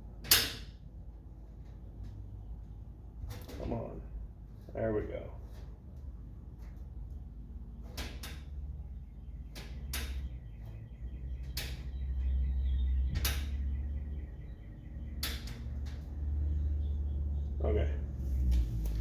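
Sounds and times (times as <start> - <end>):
steady low hum: 0.0 - 19.0
sharp clicks and knocks: 9.5 - 10.4.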